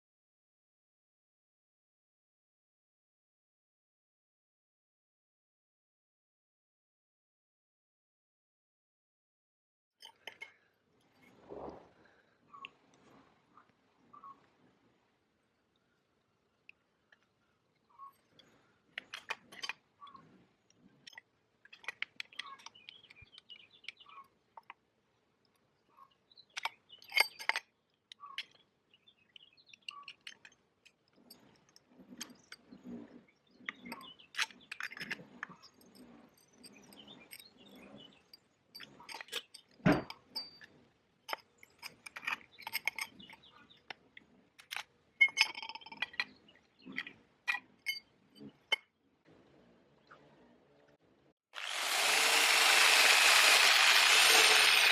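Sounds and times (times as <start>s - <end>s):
objects clinking and knocking: 19.0s - 19.8s, 26.6s - 27.7s, 33.7s - 44.0s, 44.6s - 48.9s.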